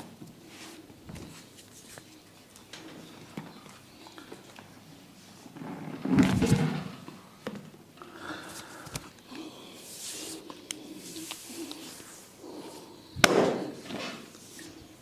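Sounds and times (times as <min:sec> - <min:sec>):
hands stroking head: 0:09.9 - 0:12.8
hands on hair and skin: 0:09.9 - 0:12.9.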